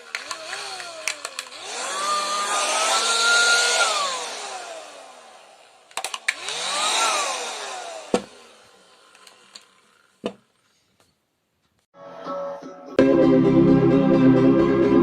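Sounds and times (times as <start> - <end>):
electric pump motor whine: 0.0 - 10.3.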